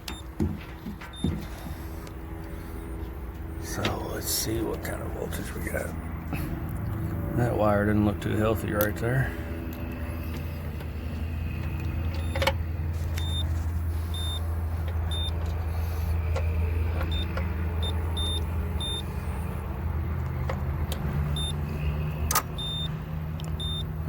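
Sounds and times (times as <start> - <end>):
low machinery hum: 0.0 - 24.0
high electronic beeps: 13.2 - 13.5, 14.1 - 14.4, 17.1 - 19.0, 22.6 - 22.9, 23.6 - 23.9.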